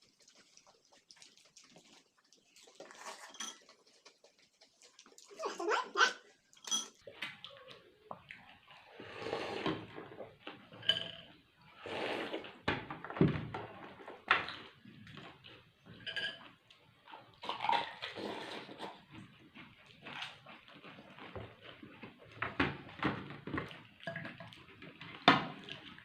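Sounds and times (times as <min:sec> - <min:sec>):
slurping: 0:00.0 - 0:10.4, 0:11.6 - 0:12.6, 0:17.4 - 0:21.6.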